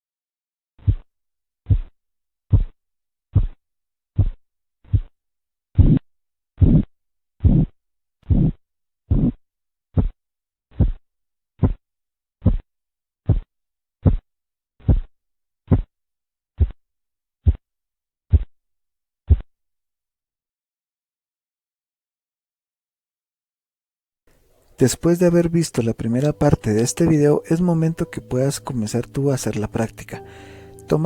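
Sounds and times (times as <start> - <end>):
pulse beats through stethoscope: 1.7 - 1.9, 2.5 - 2.8, 3.4 - 3.6, 4.2 - 5.1, 5.8 - 6.0, 6.6 - 7.7, 8.3 - 9.4, 10.0 - 10.2, 10.8 - 11.0, 12.4 - 12.6, 13.3 - 14.2, 14.8 - 15.1, 17.4 - 17.6, 19.3 - 19.5.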